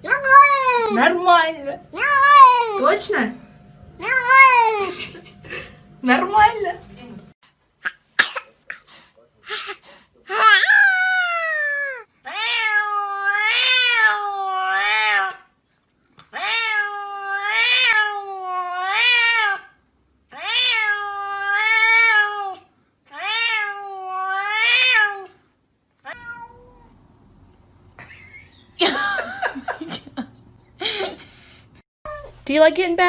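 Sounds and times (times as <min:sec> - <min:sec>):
cat meowing in long calls: 0:26.1 - 0:26.9.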